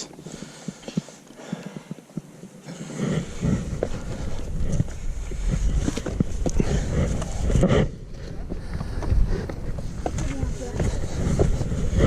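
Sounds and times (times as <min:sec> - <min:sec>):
low rumble on microphone: 0:02.8 - 0:12.0.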